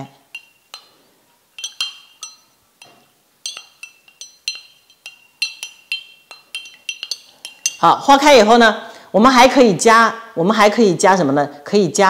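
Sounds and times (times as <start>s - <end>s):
spoon clinking in a cup: 0.3s - 8.0s.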